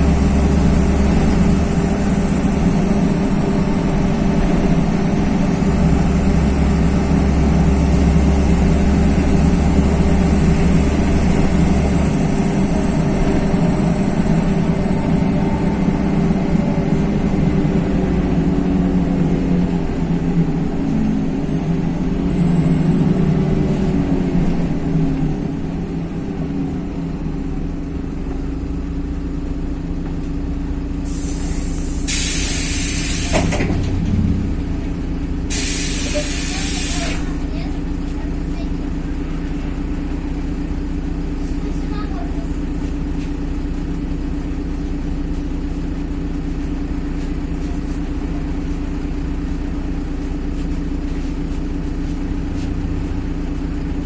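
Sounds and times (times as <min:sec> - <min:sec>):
bus engine running: 0:00.0 - 0:54.0
compressed air hiss: 0:31.1 - 0:33.6, 0:35.5 - 0:37.4.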